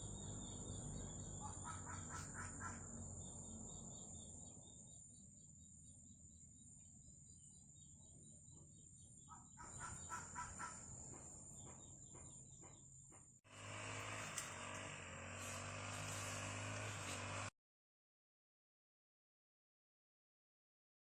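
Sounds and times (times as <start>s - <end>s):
bird calling: 0.0s - 5.1s, 8.4s - 13.2s
insect chirping: 0.0s - 12.1s.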